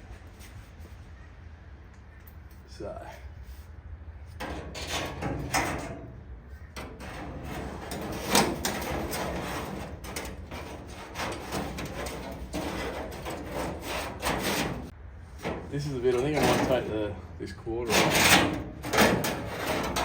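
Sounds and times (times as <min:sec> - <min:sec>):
material rubbing and scraping: 0:04.3 - 0:17.1, 0:17.8 - 0:20.0.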